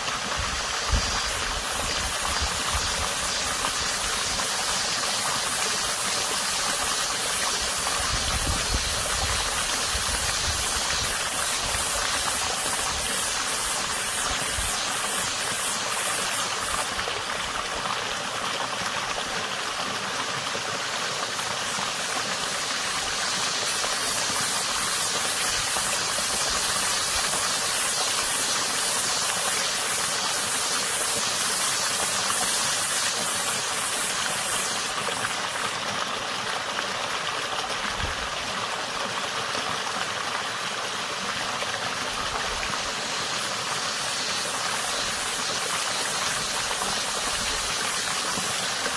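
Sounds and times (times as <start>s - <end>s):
water running in a creek: 0.0s - 48.9s
cicada buzzing: 0.2s - 17.7s, 21.0s - 35.7s, 42.1s - 48.9s.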